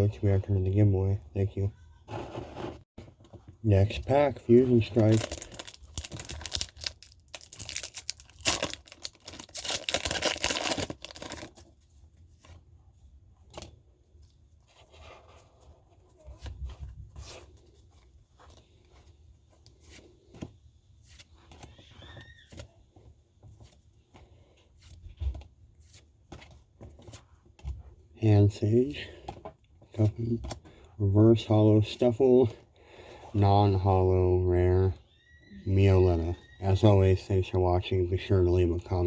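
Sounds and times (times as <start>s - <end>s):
cards clicking and rustling: 4.6s - 11.7s
foil wrapper ripping: 4.9s - 11.5s.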